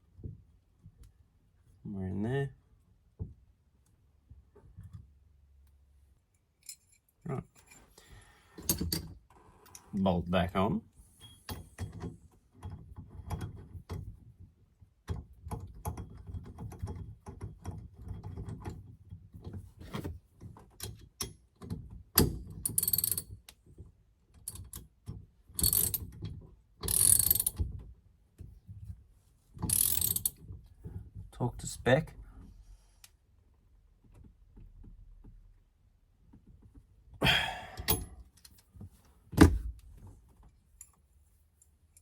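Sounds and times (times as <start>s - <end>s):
ratchet wrench clicking: 26.9s - 27.6s, 29.7s - 30.4s.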